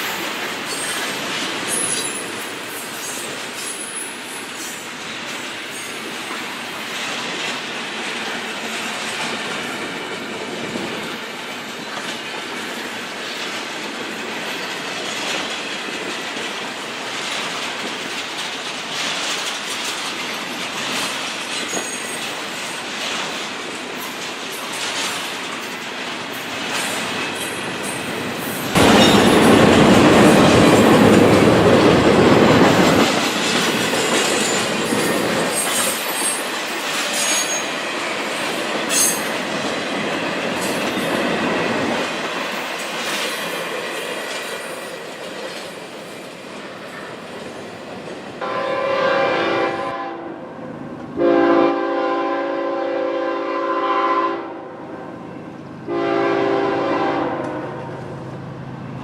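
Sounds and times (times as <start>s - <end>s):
freight train wheels clacking: 0.0s - 48.7s
train rushing past: 0.0s - 59.0s
locomotive horn blasts: 48.4s - 50.3s, 51.2s - 54.6s, 55.9s - 57.9s.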